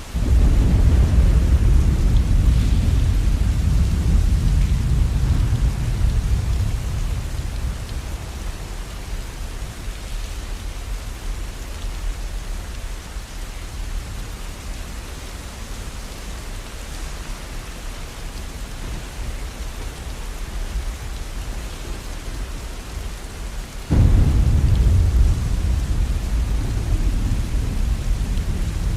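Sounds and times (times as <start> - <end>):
thunder rumble: 0.0 - 11.0, 20.7 - 28.9
steady rainfall: 0.0 - 28.9.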